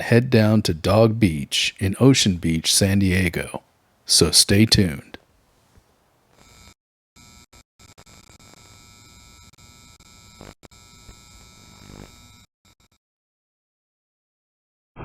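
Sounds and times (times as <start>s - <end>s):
faint electronic buzzing hum: 6.0s - 12.5s.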